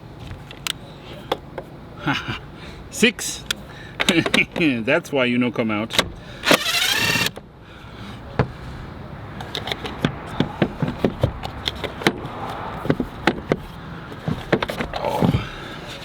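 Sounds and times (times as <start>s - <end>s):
plastic squeaking: 5.9s - 7.3s.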